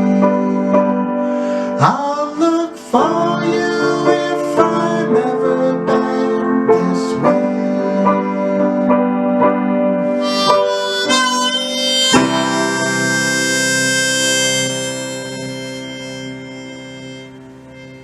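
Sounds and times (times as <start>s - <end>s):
piano chords: 0.0s - 18.0s
held melody notes sliding up: 10.0s - 18.0s.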